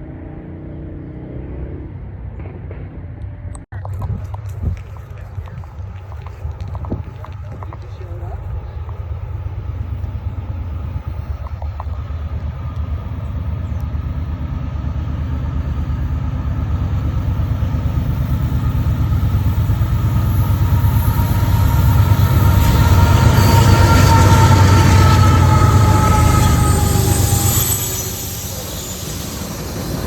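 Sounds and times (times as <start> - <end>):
diesel locomotive rumble: 3.1 - 30.0
high squeal: 17.0 - 30.0.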